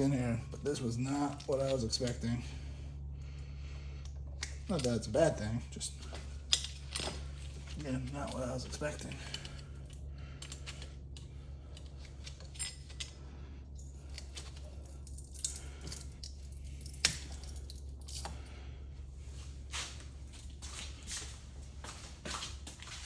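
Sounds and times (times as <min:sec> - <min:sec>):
steady low hum: 0:00.0 - 0:23.0
metal clinking: 0:06.0 - 0:18.4.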